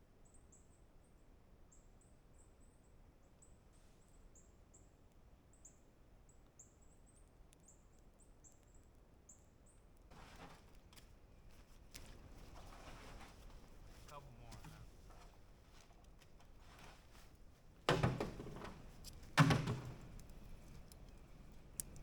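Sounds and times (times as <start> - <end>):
rustling: 10.1 - 22.0.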